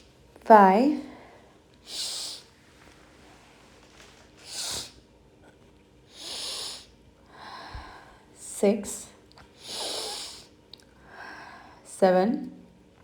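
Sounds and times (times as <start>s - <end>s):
hissy breaths through the nose: 1.3s - 3.5s, 4.2s - 5.0s, 6.1s - 8.6s, 9.5s - 11.8s.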